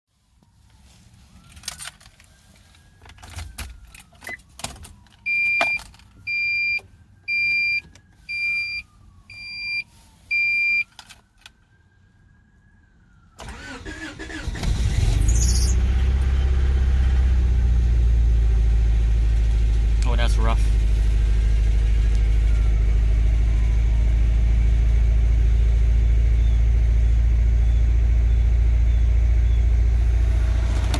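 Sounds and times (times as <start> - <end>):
car warning chime beeping: 5.3 - 10.9
car engine cranking and starting: 13.4 - 30.9
car engine idling rough: 15.7 - 30.9.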